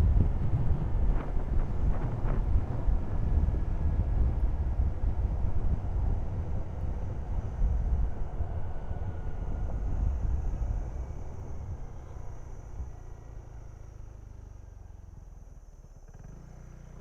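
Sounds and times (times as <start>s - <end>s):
wind buffeting microphone: 0.0s - 12.9s
faint vehicle sound: 0.0s - 17.0s.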